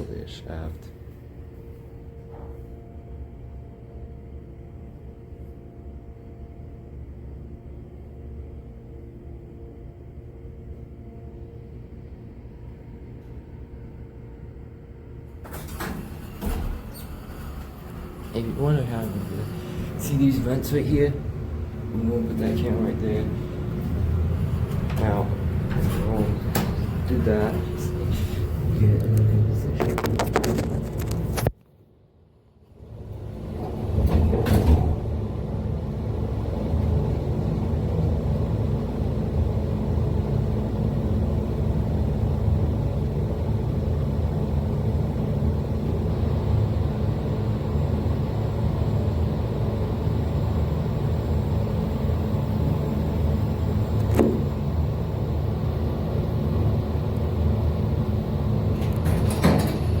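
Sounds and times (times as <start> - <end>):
elevator rumble with rushing air: 15.3 - 31.5, 32.8 - 60.0.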